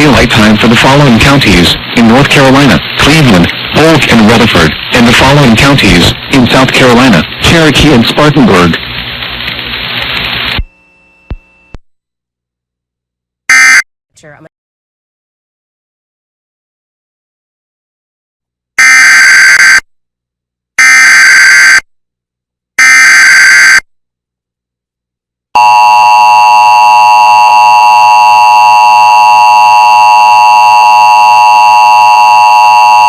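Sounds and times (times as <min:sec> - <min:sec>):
data header bursts: 0:00.0 - 0:08.7
two-tone attention signal buzz: 0:25.6 - 0:33.0.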